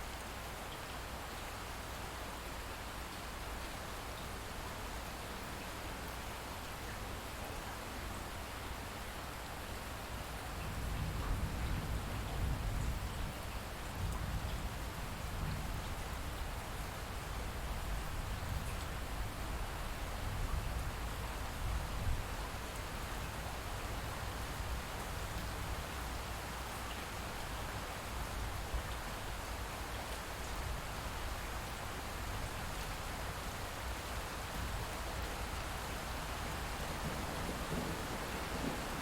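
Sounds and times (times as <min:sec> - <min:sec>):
light rain falling: 0:00.0 - 0:39.0
distant thunder rumble: 0:36.4 - 0:39.0.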